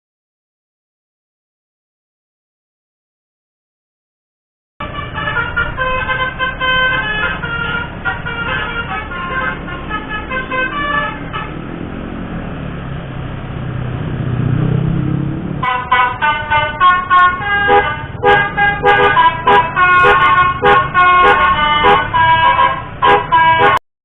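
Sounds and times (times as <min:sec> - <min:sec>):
multi-tone horn melody: 0:04.8 - 0:11.8, 0:15.6 - 0:23.8
vehicle engine running: 0:04.8 - 0:23.8.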